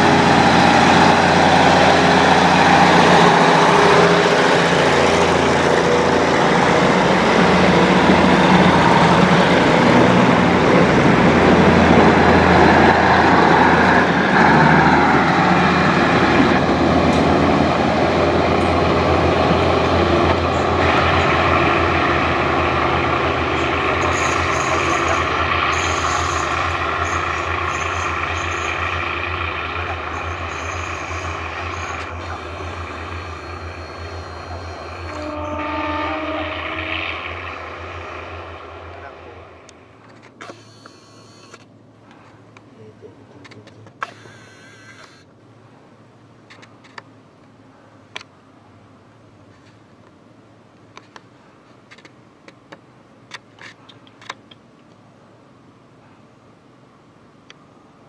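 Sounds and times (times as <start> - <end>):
diesel train passing: 0.0 - 40.6.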